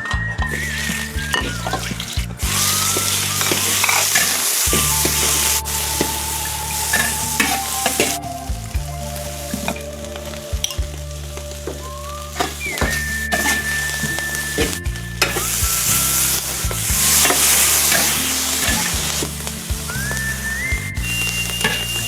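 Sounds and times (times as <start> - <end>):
food sizzling in a pan: 0.6 - 10.4, 11.2 - 22.0.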